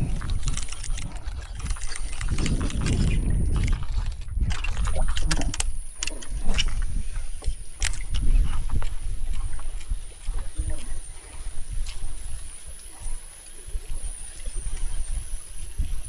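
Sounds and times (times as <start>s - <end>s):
thin high whine: 5.0s - 16.0s.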